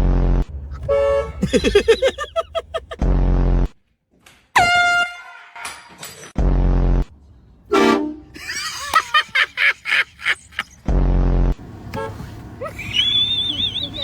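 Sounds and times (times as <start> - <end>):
air horn blasts: 0.7 - 1.4, 4.6 - 5.6, 7.7 - 8.3.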